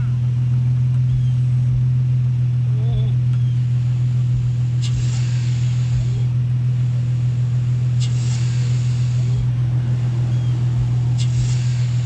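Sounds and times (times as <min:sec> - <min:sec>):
car engine idling: 0:00.0 - 0:12.0
short intake hiss: 0:03.5 - 0:12.0.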